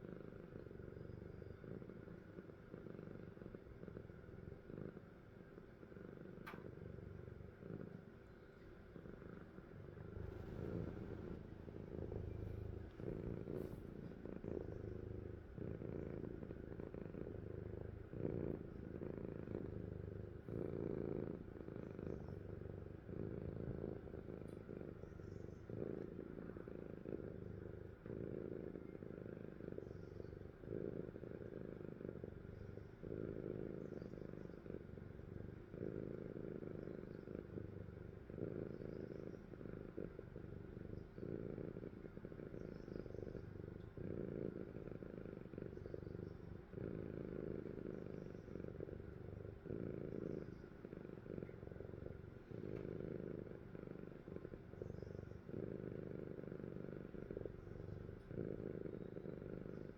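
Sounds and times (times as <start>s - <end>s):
cat snoring: 0.0s - 59.9s.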